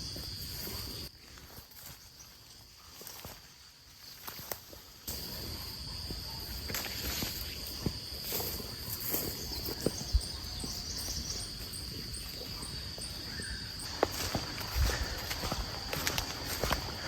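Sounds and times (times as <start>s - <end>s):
insects droning: 0.0s - 17.0s
footsteps: 13.8s - 17.0s.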